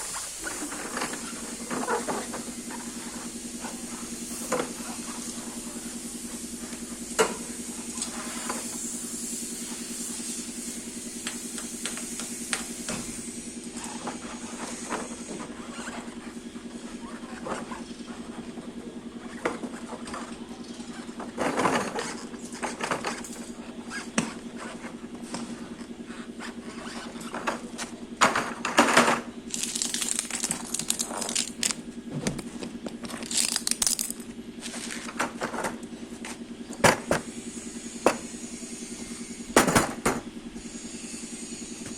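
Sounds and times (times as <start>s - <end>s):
short hissing bursts: 7.7s - 13.7s, 29.5s - 31.8s
engine humming: 29.4s - 36.8s.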